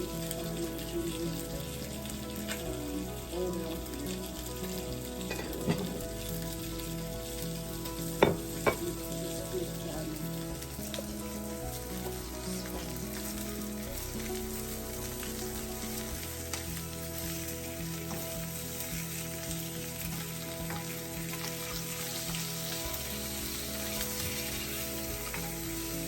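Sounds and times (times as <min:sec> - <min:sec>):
food sizzling in a pan: 0:00.0 - 0:26.0
utensil knocking against pan: 0:08.2 - 0:08.8.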